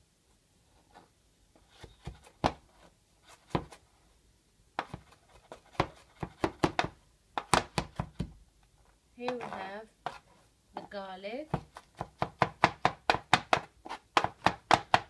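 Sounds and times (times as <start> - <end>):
knife chopping on wooden board: 4.8 - 5.1, 5.7 - 8.4, 11.5 - 15.0.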